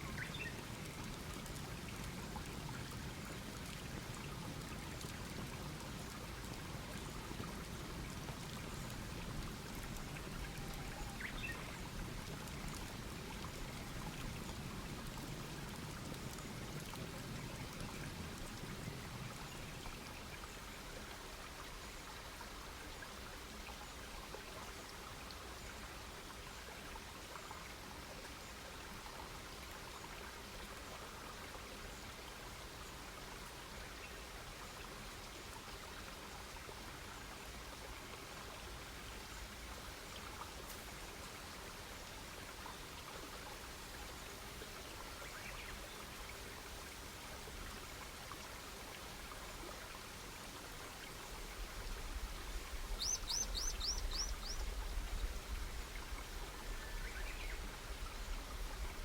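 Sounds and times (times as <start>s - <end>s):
bird chirping: 53.0s - 54.6s.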